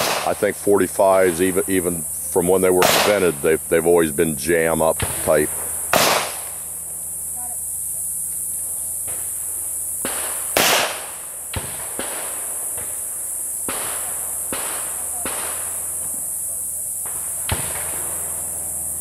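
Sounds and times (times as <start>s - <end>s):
gunshots: 0.0s - 0.6s, 2.5s - 3.6s, 4.8s - 6.6s, 10.0s - 13.0s, 13.7s - 15.9s
steady high hiss: 0.0s - 19.0s.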